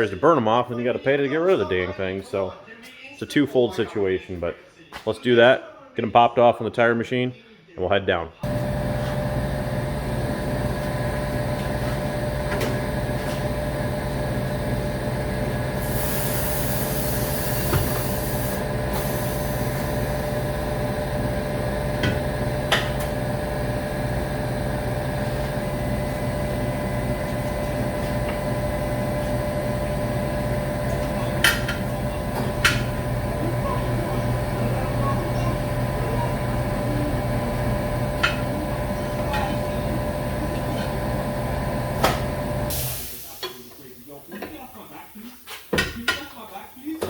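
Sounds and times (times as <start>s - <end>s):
steady machine hum: 8.4s - 44.3s
compressed air hissing: 15.4s - 21.1s, 42.0s - 44.2s.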